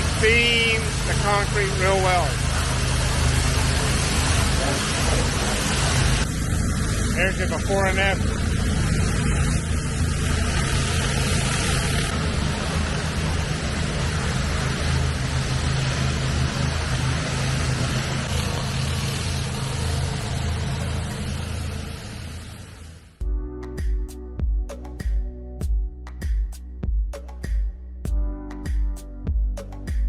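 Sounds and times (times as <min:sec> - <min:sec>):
high-pressure water spray hissing: 0:00.0 - 0:23.1
small engine droning: 0:00.0 - 0:23.2.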